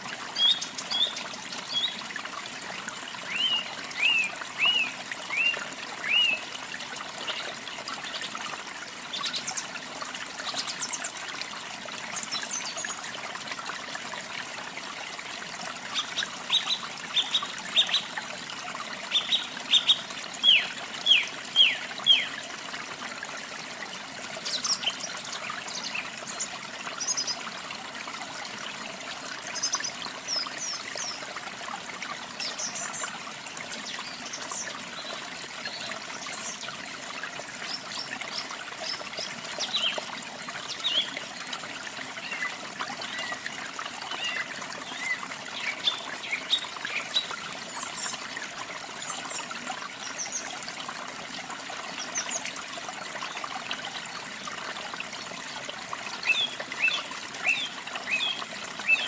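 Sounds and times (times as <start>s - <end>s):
water trickling: 0.0s - 59.0s
songbirds calling: 3.3s - 6.5s, 19.1s - 22.4s, 40.7s - 41.2s, 56.2s - 59.0s.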